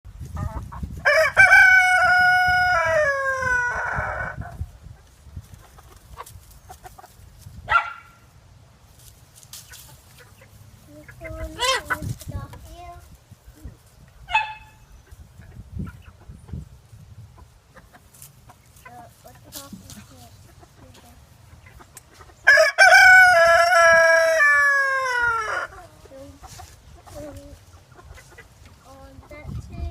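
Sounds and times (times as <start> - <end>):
rooster crowing: 1.1 - 4.4, 22.5 - 25.7.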